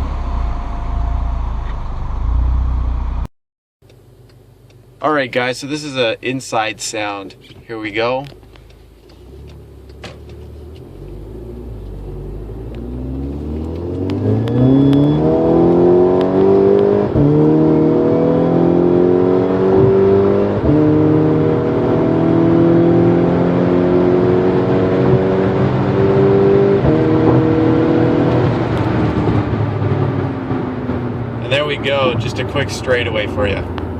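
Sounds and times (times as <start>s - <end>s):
car engine accelerating: 0.0s - 3.3s, 8.2s - 33.9s
gear upshifts: 7.3s - 22.0s.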